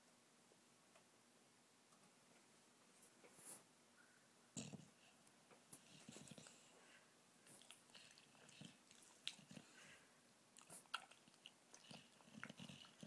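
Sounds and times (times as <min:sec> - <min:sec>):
dog snuffling: 0:05.7 - 0:13.0.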